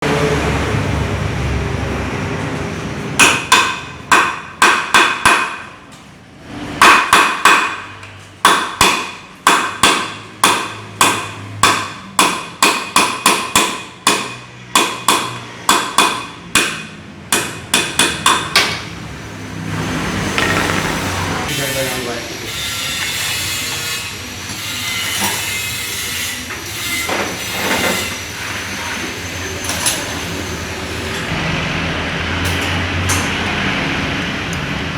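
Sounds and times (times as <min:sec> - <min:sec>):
hammer striking metal: 0:03.2 - 0:05.8, 0:06.8 - 0:19.0, 0:19.8 - 0:21.8.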